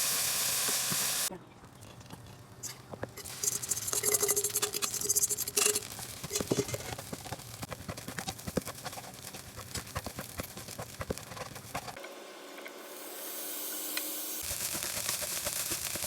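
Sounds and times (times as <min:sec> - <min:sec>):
food sizzling: 0:00.0 - 0:01.3, 0:02.6 - 0:16.0
spatula scraping a pan: 0:02.6 - 0:12.0, 0:14.4 - 0:16.0.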